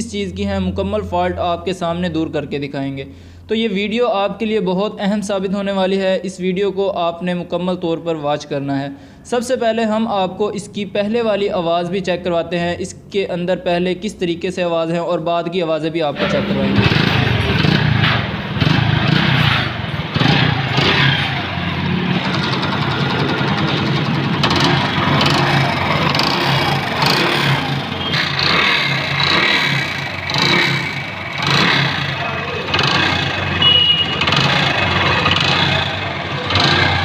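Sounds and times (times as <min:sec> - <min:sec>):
motorcycle engine knocking: 0:18.6 - 0:37.0.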